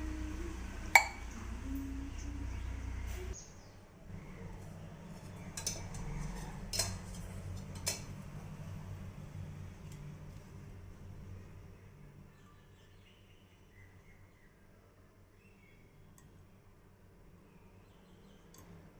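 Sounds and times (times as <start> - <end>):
low steady hum: 0.0 - 18.9
metal utensils clinking: 5.5 - 8.2.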